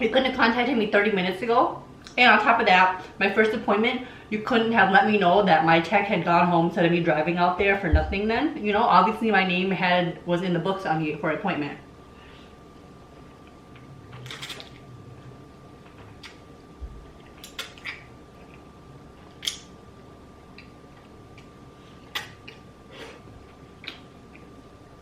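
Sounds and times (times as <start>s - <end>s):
chewing and mouth clicks: 15.8s - 16.4s, 17.2s - 19.7s, 23.4s - 24.5s.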